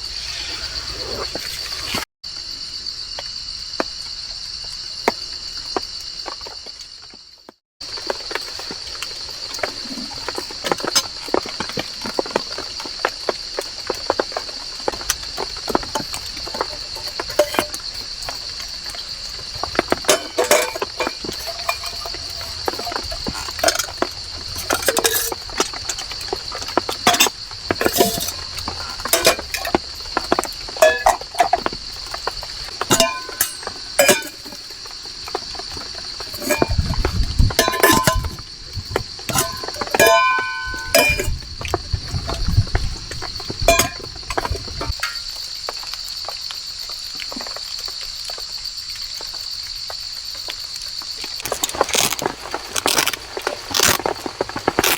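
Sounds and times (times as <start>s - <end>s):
high insect drone: 0.0s - 54.9s
metal pots clinking: 15.7s - 42.6s, 43.4s - 45.4s.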